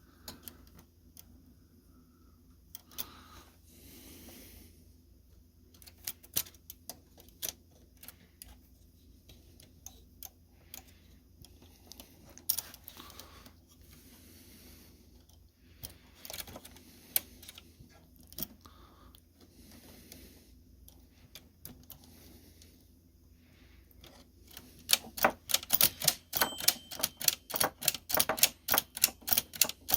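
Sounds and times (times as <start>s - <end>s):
typewriter mechanism clicks: 24.5s - 29.9s.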